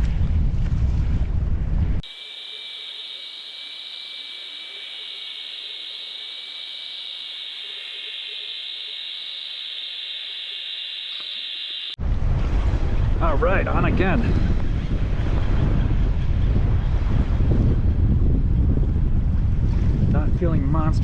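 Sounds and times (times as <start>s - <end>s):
wind noise: 0.0s - 21.0s
steady high hiss with whine: 2.0s - 12.0s.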